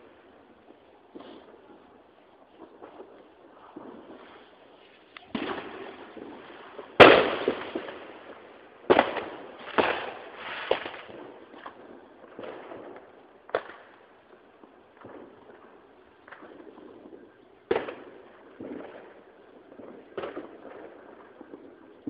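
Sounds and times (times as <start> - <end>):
fireworks bangs: 0.0 - 22.0
small firework cracks: 0.0 - 22.0.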